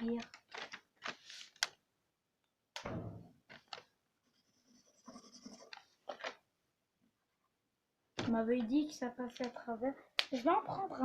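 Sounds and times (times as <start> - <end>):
marker scratching on paper: 4.3 - 5.8.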